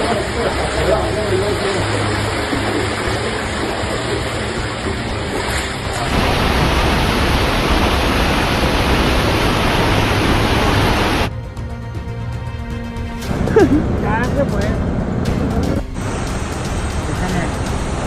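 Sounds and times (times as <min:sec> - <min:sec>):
floodwater rushing: 0:00.0 - 0:11.3.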